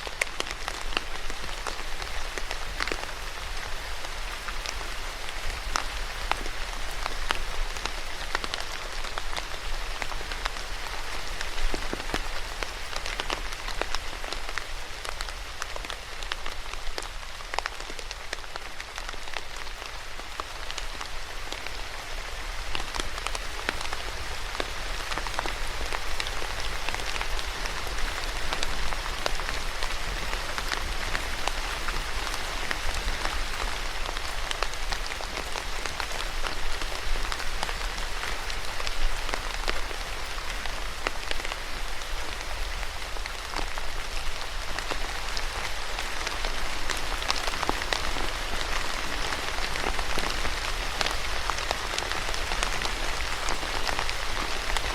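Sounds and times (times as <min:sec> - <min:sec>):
steady rain falling: 0:00.0 - 0:54.9.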